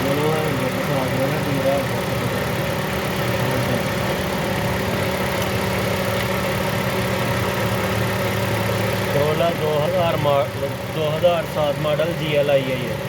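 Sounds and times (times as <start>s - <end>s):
car engine idling with misfire: 0.0s - 13.0s.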